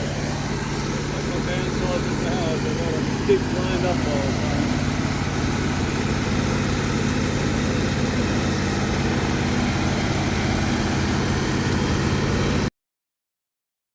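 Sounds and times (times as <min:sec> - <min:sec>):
large engine running: 0:00.0 - 0:12.7.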